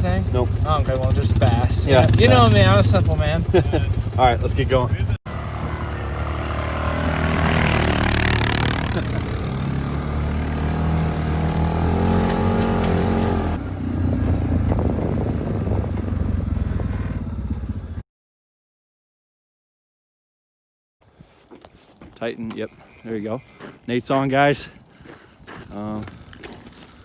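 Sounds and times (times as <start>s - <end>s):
quad bike engine accelerating: 0.0s - 18.0s
wind noise: 13.4s - 17.1s.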